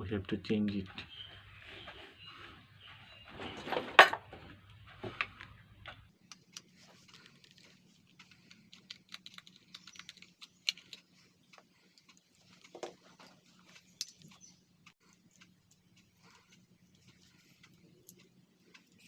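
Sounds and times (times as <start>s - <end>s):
kettle parts clicking: 6.3s - 14.5s.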